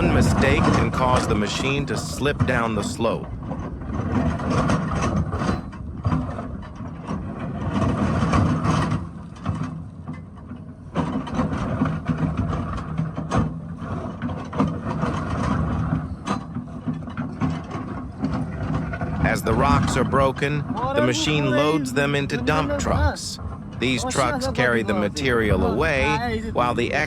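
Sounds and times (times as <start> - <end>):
excavator engine running: 0.0 - 3.1, 19.0 - 27.0.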